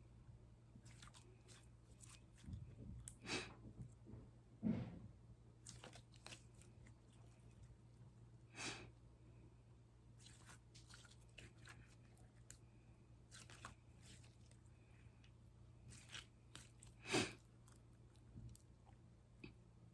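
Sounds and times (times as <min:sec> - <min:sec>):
slime crackling and squishing: 0:00.8 - 0:02.5, 0:05.7 - 0:07.6, 0:10.2 - 0:12.6, 0:13.2 - 0:14.6, 0:15.2 - 0:18.3.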